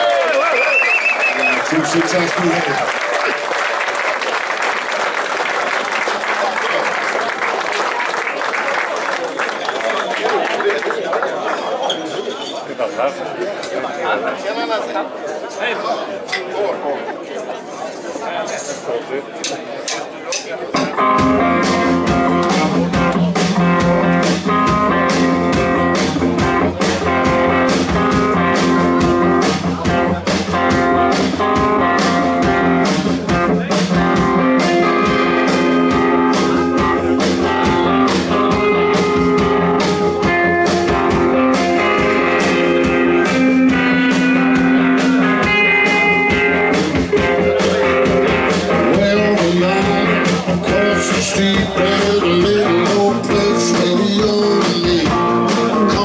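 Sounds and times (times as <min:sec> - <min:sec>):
blues band playing: 0:20.7 - 0:56.0
guitar: 0:20.7 - 0:56.0
steady drum beat: 0:20.8 - 0:56.0.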